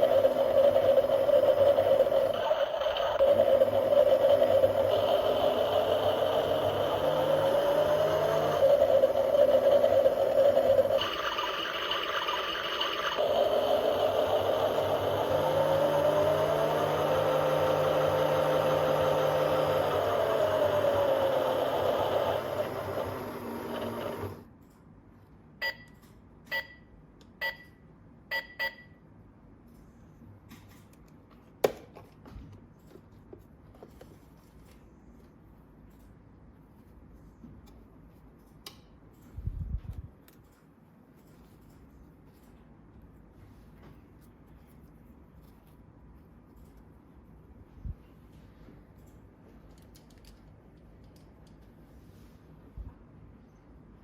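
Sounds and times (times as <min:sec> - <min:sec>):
toy washing machine motor whirring: 0:00.0 - 0:24.5
short electronic beeps: 0:25.6 - 0:29.0.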